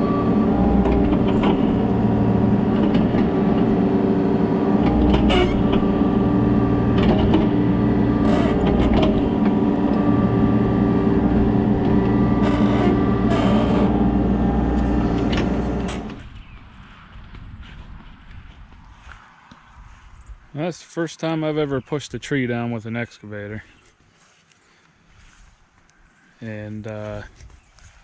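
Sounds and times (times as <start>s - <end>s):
excavator diesel engine running: 0.0s - 16.4s.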